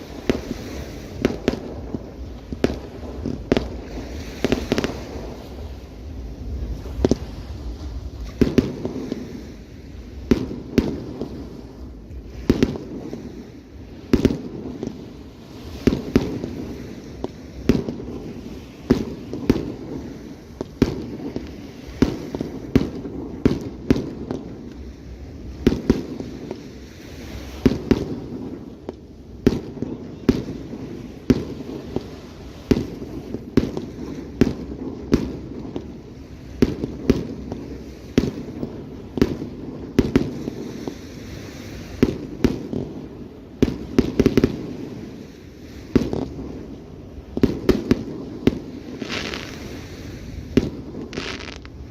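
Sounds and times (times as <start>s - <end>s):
low rumble: 1.7s - 10.8s.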